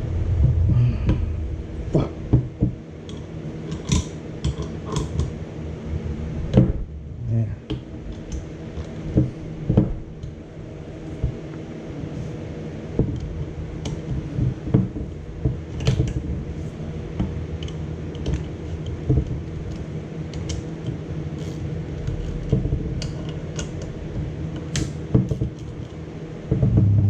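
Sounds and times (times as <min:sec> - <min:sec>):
steady low hum: 0:00.0 - 0:27.0.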